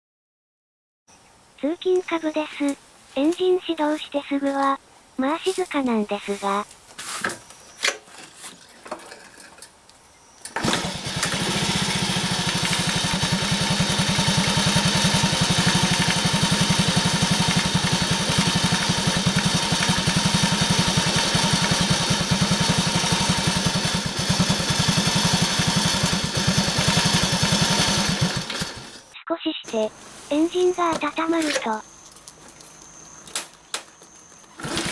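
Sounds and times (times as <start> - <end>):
motorcycle engine starting and idling: 10.4 - 29.2, 29.9 - 34.9.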